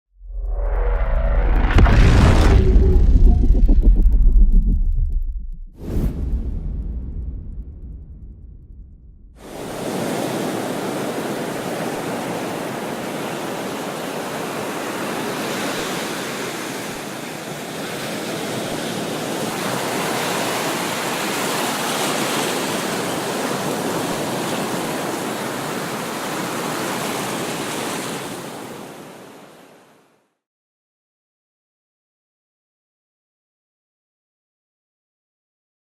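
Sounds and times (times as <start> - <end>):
waves washing onto shore: 9.4 - 30.1.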